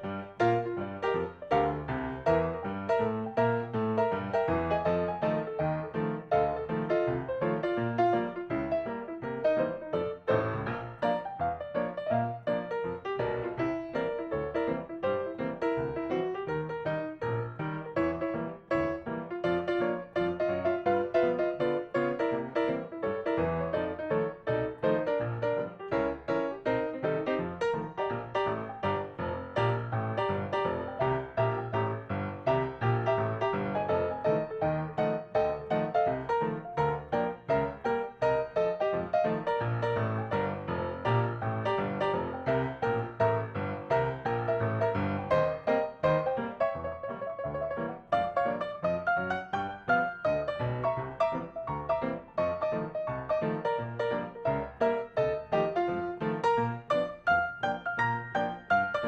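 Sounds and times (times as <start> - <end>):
piano music: 0.0 - 59.0.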